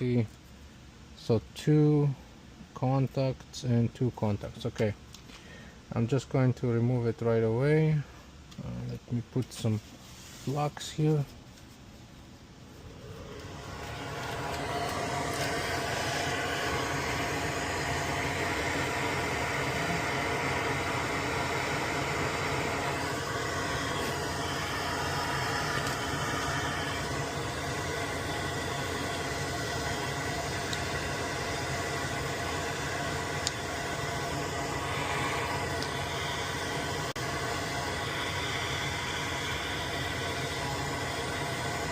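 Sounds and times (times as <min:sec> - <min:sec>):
electric blower whirring: 0:12.8 - 0:41.9.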